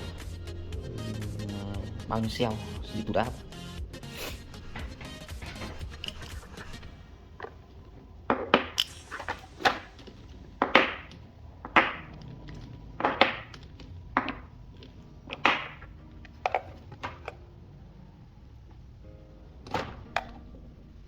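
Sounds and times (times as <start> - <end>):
hand tools clicking and scraping: 0.0 - 7.0, 8.8 - 15.0.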